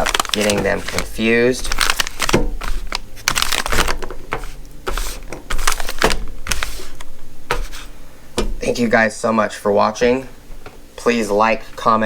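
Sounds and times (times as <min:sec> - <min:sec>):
plastic packages crinkling: 0:00.0 - 0:07.7.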